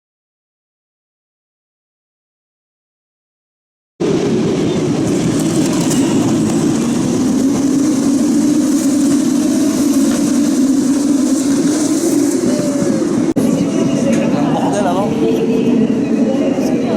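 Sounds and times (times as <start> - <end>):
race car engines rumbling: 4.0 - 16.9.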